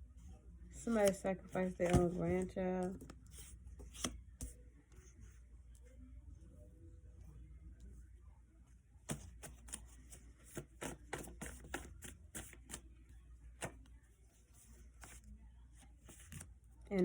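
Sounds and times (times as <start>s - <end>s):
cards being shuffled: 0.9s - 4.5s, 9.1s - 12.9s.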